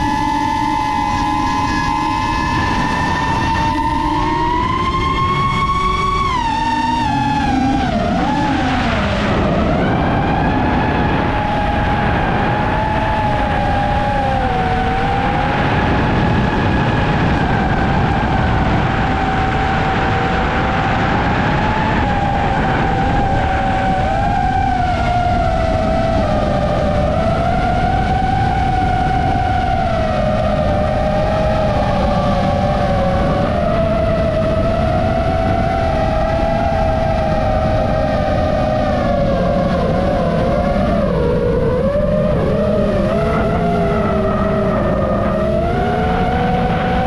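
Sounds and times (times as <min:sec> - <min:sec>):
quadcopter motors whining: 0:00.0 - 0:47.0
steady rushing noise: 0:00.0 - 0:47.0.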